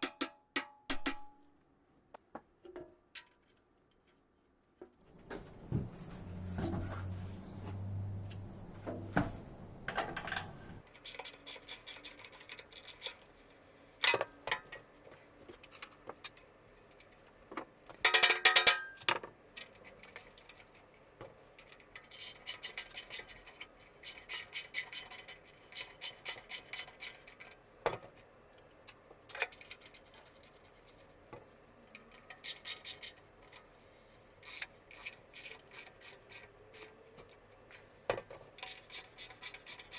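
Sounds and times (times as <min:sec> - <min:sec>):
metal parts and tools clinking: 0:09.9 - 0:13.2.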